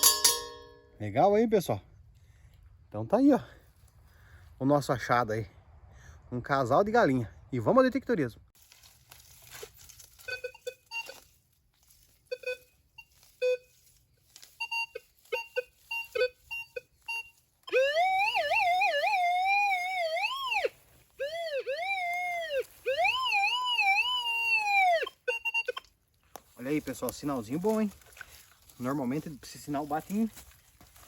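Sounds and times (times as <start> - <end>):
metal detector wavering tone: 10.2 - 11.3, 12.3 - 25.9
metal detector beeps: 10.2 - 11.4, 12.2 - 25.9.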